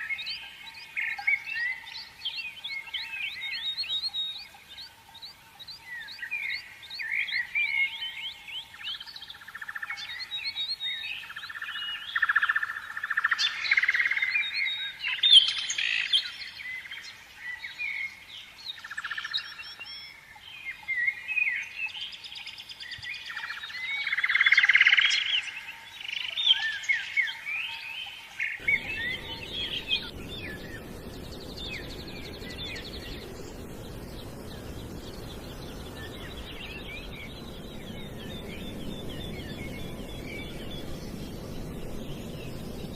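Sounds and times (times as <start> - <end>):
small birds chirping: 28.4 - 42.9
steady hiss: 28.6 - 42.9.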